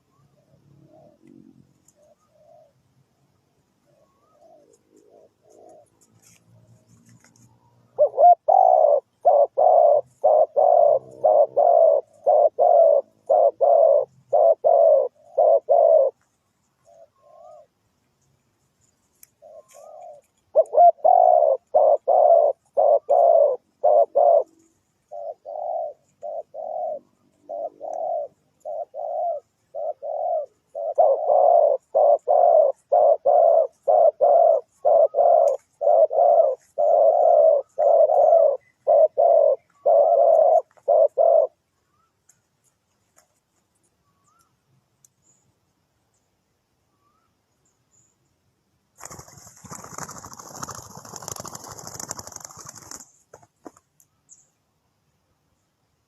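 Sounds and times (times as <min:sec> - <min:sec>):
dove cooing: 0:00.0 - 0:02.8, 0:03.9 - 0:06.4, 0:07.4 - 0:16.2, 0:16.8 - 0:17.8, 0:19.4 - 0:42.1, 0:49.0 - 0:53.2.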